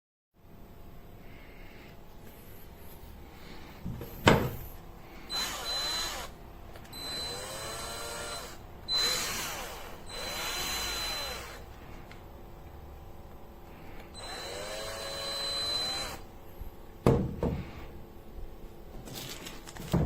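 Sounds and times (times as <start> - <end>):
cordless drill motor whine: 5.3 - 11.7, 14.0 - 16.3.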